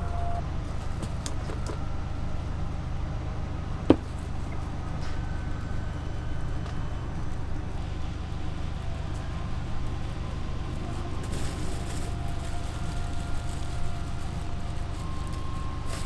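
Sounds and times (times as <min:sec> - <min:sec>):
low mechanical motor hum: 0:00.0 - 0:16.0.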